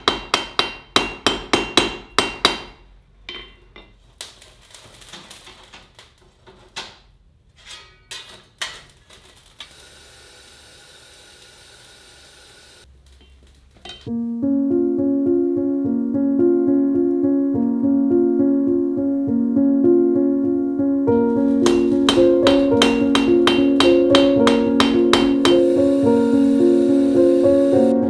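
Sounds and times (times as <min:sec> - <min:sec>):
steady hiss: 0:09.5 - 0:13.3, 0:21.4 - 0:28.0
hammer blows on anvil: 0:21.5 - 0:28.0.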